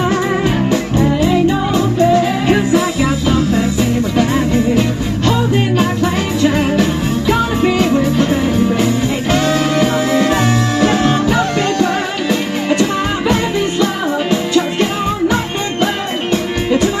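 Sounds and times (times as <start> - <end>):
bass: 0.0 - 17.0
drums: 0.0 - 17.0
guitar: 0.0 - 17.0
person singing: 0.0 - 17.0
soul band playing dance beat: 0.0 - 17.0.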